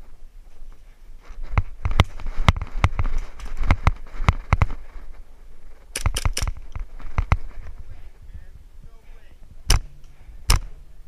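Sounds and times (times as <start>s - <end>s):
sharp snaps: 5.9s - 7.4s, 9.7s - 10.8s.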